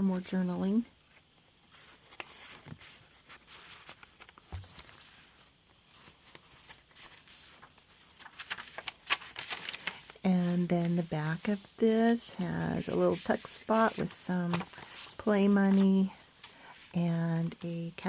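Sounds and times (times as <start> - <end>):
paper rustling and crinkling: 1.2 - 18.0.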